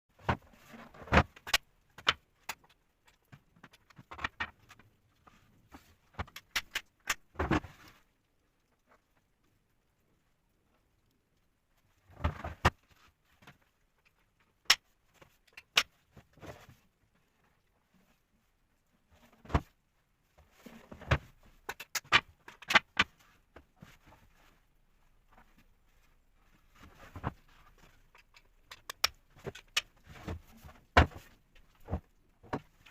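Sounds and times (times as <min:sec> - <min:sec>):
sharp wooden clicks and taps: 0:06.2 - 0:07.3, 0:14.1 - 0:16.0, 0:28.1 - 0:30.0.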